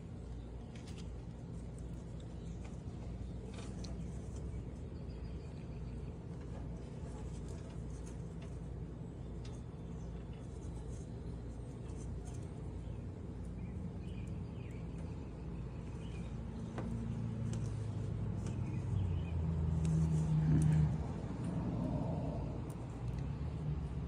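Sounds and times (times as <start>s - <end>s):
vehicle engine running: 15.8s - 24.0s.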